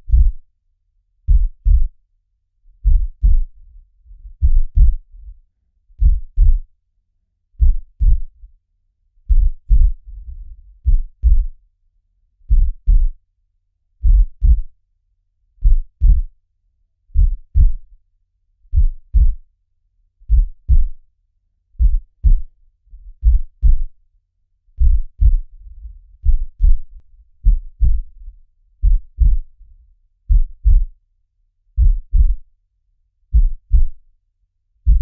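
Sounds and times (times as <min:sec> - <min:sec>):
heartbeat thumps: 0:00.0 - 0:00.4, 0:01.3 - 0:02.0, 0:02.8 - 0:03.6, 0:04.2 - 0:05.1, 0:06.0 - 0:06.7, 0:07.6 - 0:08.3, 0:09.3 - 0:11.6, 0:12.5 - 0:13.2, 0:14.0 - 0:14.7, 0:15.6 - 0:16.3, 0:17.2 - 0:17.8, 0:18.7 - 0:19.4, 0:20.3 - 0:21.0, 0:21.8 - 0:22.6, 0:23.2 - 0:24.0, 0:24.8 - 0:29.6, 0:30.3 - 0:31.0, 0:31.8 - 0:32.5, 0:33.3 - 0:34.0.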